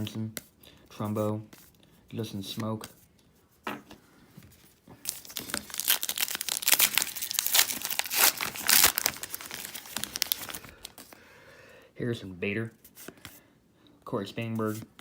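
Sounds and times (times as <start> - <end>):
plastic wrapper crinkling: 5.0 - 11.2.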